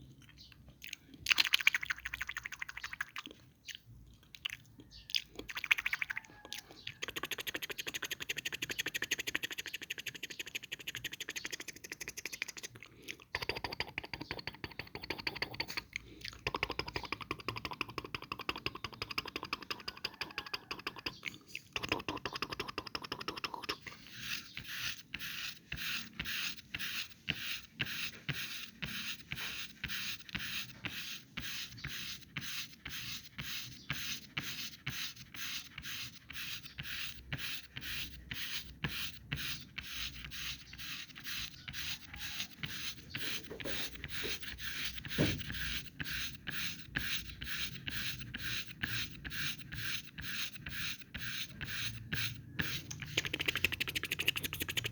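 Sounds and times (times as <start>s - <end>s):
foam rubbing on microphone: 52.6s - 54.9s.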